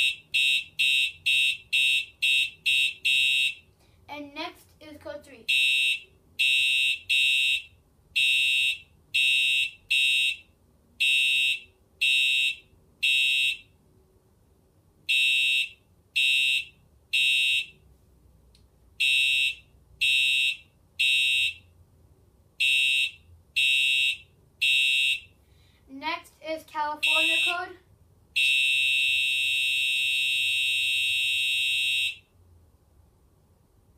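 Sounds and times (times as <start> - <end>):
fire alarm horn blasts: 0.0 - 3.7, 5.5 - 13.7, 15.1 - 17.8, 19.0 - 21.7, 22.6 - 25.3, 27.0 - 27.8, 28.4 - 32.3.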